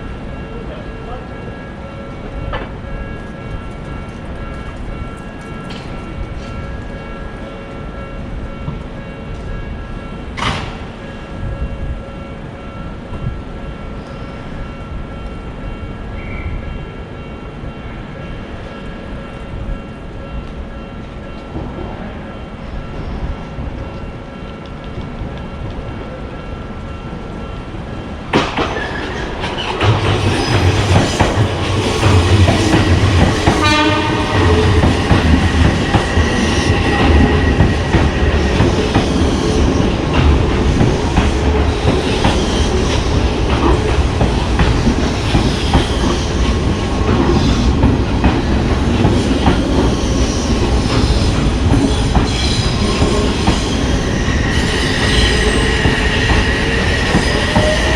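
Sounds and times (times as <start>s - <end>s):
train low rumble: 16.9s - 57.9s.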